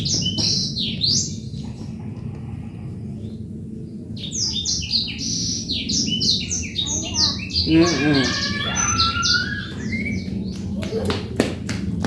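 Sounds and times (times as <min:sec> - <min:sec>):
birds chirping: 0:00.0 - 0:11.2
bird warbling call: 0:07.0 - 0:10.3.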